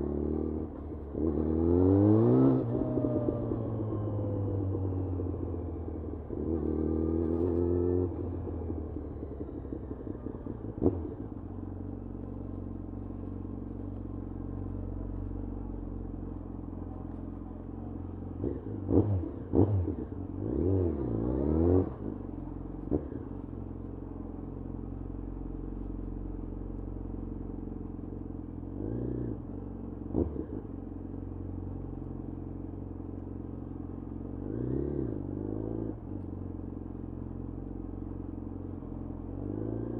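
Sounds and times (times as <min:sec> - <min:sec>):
motorcycle engine revving: 0:00.0 - 0:08.8, 0:18.4 - 0:23.4.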